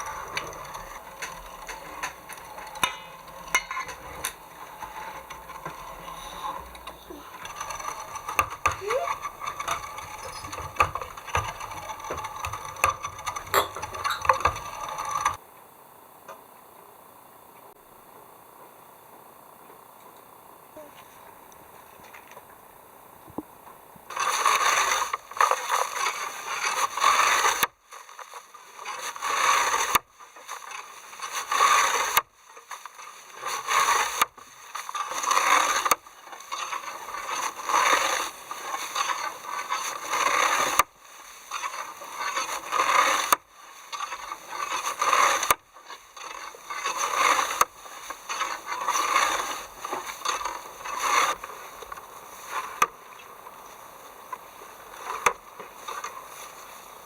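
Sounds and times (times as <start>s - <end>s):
rough scraping strokes: 0.0s - 15.4s, 24.1s - 32.2s, 32.8s - 57.0s.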